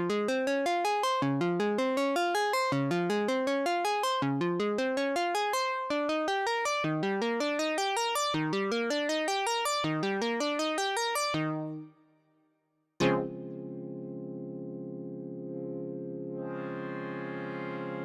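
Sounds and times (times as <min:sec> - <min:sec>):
synthesizer arpeggio: 0:06.1 - 0:11.8, 0:13.0 - 0:18.0.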